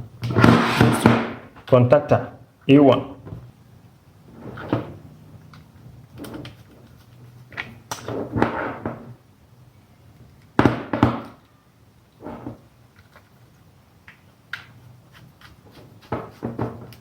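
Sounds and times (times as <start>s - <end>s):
knocks and scrapes of wire and tools: 12.2s - 12.7s, 14.7s - 17.0s.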